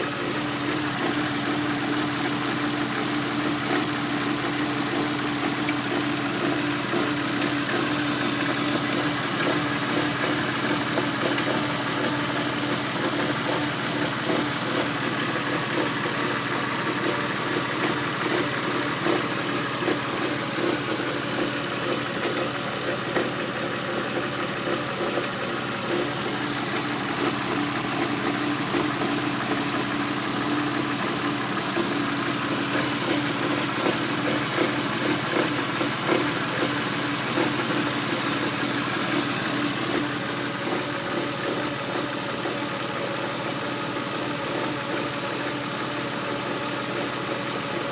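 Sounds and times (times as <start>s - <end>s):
strange engine noise: 0.0s - 47.8s
car engine idling: 0.0s - 47.9s.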